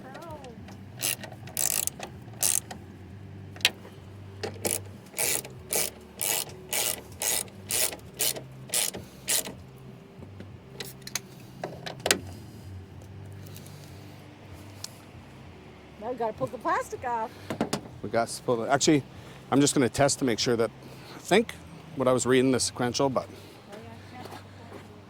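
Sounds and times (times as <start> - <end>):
low steady hum: 0.0 - 25.0
socket ratchet clicking: 0.1 - 2.9, 4.4 - 9.6.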